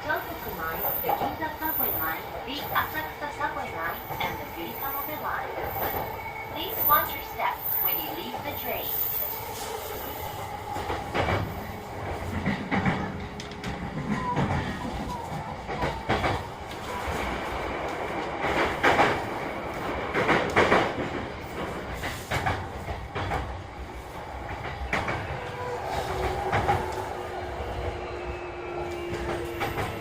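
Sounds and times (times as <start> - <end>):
train running rumble: 0.0 - 30.0.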